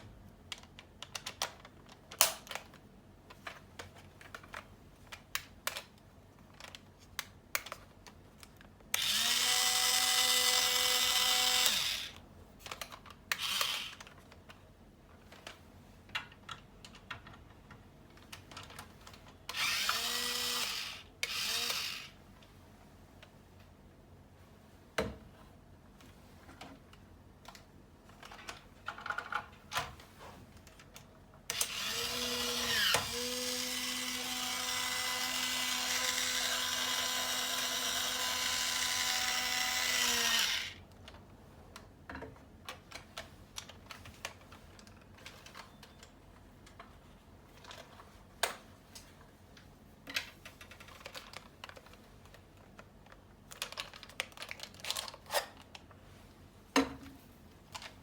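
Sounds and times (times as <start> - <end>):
small plastic parts clicking: 0.5 - 14.6, 50.1 - 55.9
small electric motor running: 9.0 - 12.2, 13.4 - 14.0, 19.6 - 22.1, 31.5 - 40.8.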